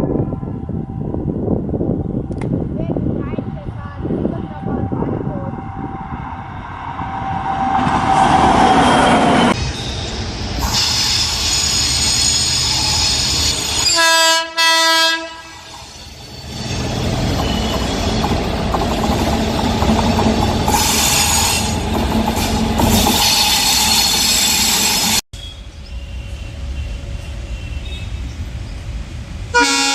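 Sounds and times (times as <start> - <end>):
train wheels rumbling on rails: 0.0 - 14.6, 15.3 - 29.9
train horn blast: 13.8 - 15.7, 29.5 - 29.9.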